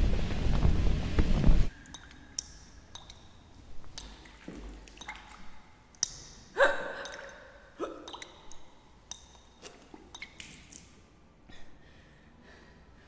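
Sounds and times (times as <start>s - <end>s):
small clicks and drips: 1.7s - 11.0s
woman hiccuping: 7.8s - 8.2s.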